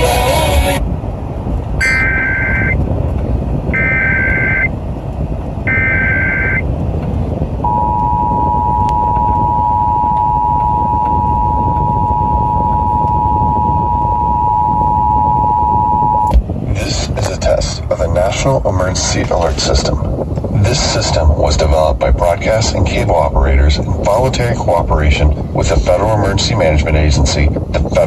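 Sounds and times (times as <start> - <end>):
screeching digital bursts: 1.8 - 2.8, 3.8 - 4.7, 5.7 - 6.6
two-tone attention signal: 1.8 - 2.8, 3.8 - 4.7, 5.7 - 6.6, 7.6 - 16.3.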